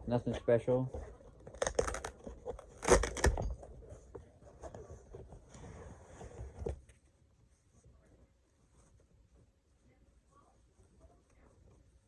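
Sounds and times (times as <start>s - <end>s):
packaging rustling: 1.3s - 3.6s.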